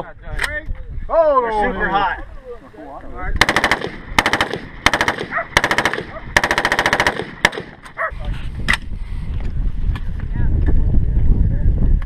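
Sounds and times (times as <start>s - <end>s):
automatic gunfire bursts: 3.4s - 7.8s
single gunshot: 3.4s - 7.9s.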